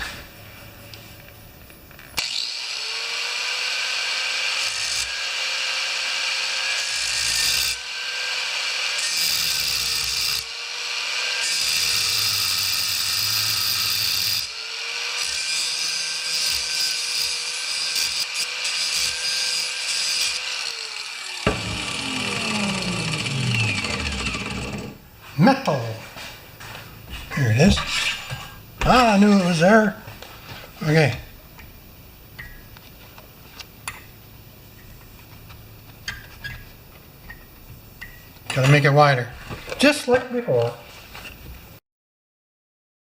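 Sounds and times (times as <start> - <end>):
power tool working metal: 2.2 - 25.1.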